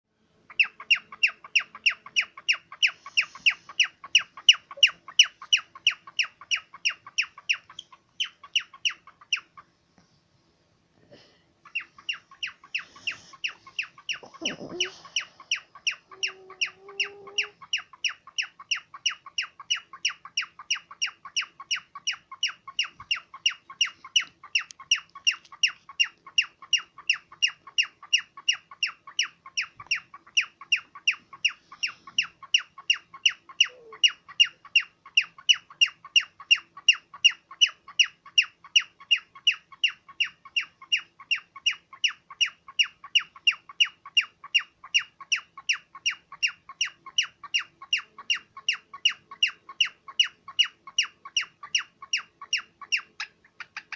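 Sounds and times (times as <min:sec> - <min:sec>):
cockatiel shrill chirps: 0:11.7 - 0:53.9.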